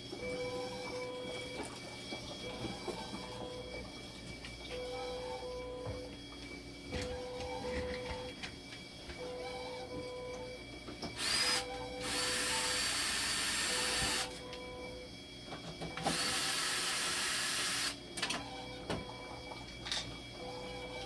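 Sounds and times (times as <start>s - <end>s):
machine hissing bursts: 11.2s - 14.4s, 16.1s - 18.0s.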